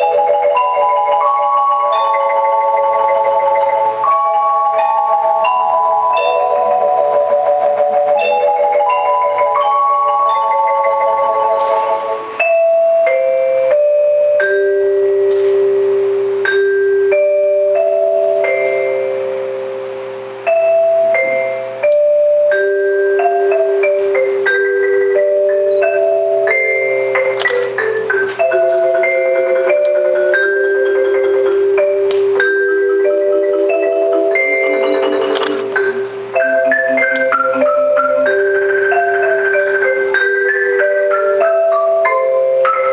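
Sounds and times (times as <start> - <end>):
bell-like notes: 0.0 - 42.9
marimba melody: 0.0 - 42.9.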